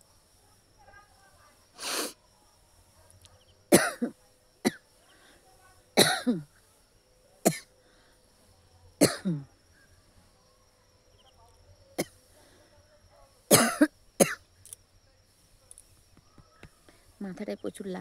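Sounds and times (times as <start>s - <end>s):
person coughing: 3.7s - 4.1s, 6.0s - 6.4s, 13.5s - 14.4s.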